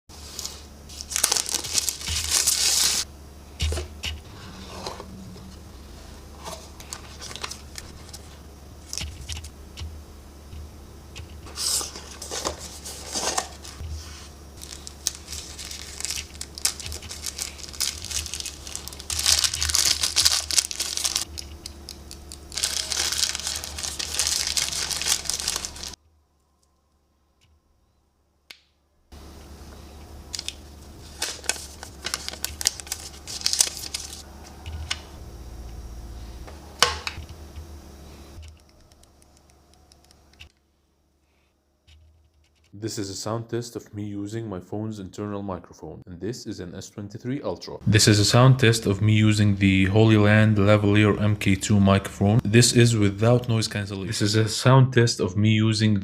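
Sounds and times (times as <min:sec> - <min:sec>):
packaging crinkling and tearing: 0:00.9 - 0:03.0, 0:14.6 - 0:26.0, 0:30.3 - 0:34.2.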